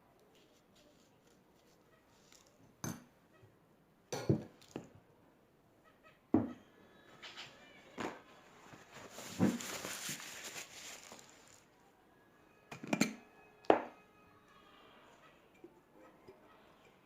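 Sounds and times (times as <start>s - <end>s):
kitchen knocks and clunks: 4.1s - 4.6s, 6.4s - 6.6s.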